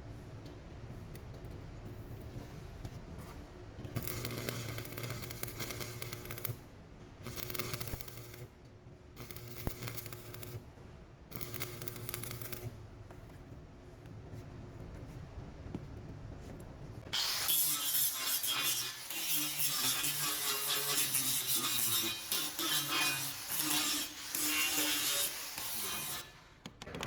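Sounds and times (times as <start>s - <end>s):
welding arc crackling and hissing: 4.0s - 6.6s, 7.2s - 8.5s, 9.2s - 10.6s, 11.3s - 12.8s, 17.2s - 26.4s.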